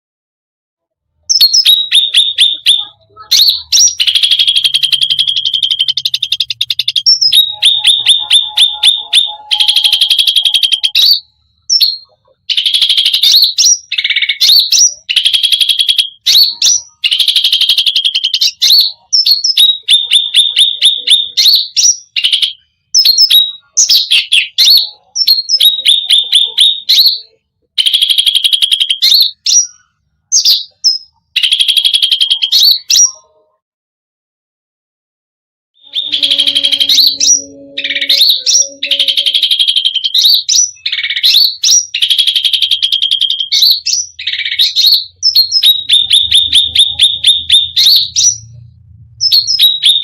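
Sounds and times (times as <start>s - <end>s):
bird whistled notes: 1.3s - 27.2s, 35.8s - 48.6s, 49.2s - 50.0s
bird chattering trills: 1.3s - 33.3s, 35.8s - 48.6s, 49.2s - 50.0s.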